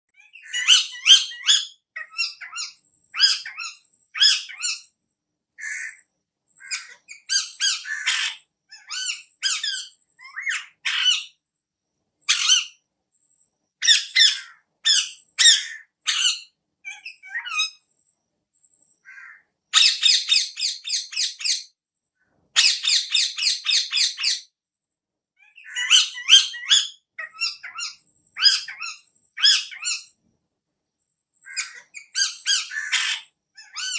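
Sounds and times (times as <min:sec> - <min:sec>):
parrot squawking: 0:00.2 - 0:04.9, 0:06.6 - 0:11.4, 0:12.3 - 0:12.8, 0:13.8 - 0:17.8, 0:19.1 - 0:21.7, 0:22.6 - 0:24.5, 0:25.4 - 0:30.1, 0:31.5 - 0:33.9.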